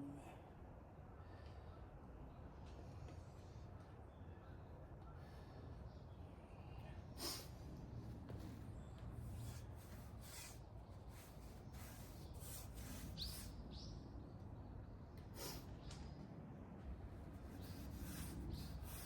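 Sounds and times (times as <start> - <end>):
faint brushing strokes: 8.3 - 13.6, 17.3 - 19.0.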